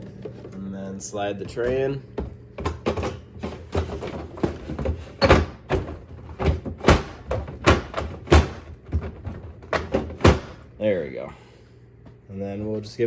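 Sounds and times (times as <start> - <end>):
plastic ice bin knocking and clicking: 1.4 - 10.6.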